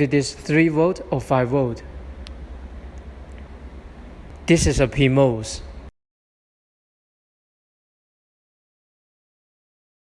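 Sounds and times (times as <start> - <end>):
steady low hum with hiss: 0.0 - 6.0.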